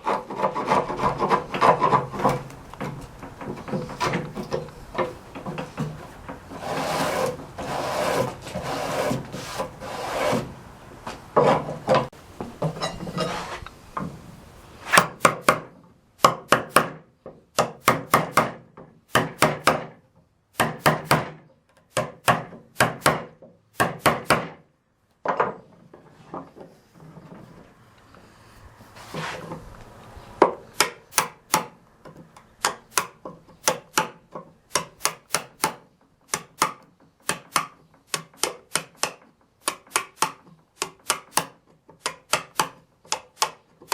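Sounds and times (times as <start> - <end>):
chisel scraping wood: 0.0 - 10.6, 13.1 - 13.6, 14.8 - 15.2, 29.0 - 29.7
hammer tapping chisel: 30.4 - 43.9.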